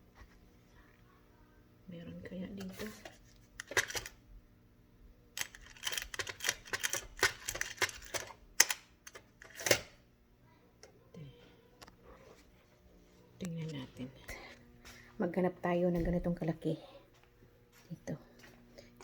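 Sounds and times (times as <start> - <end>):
small screws clicking and rattling: 3.6 - 4.2, 5.4 - 9.8.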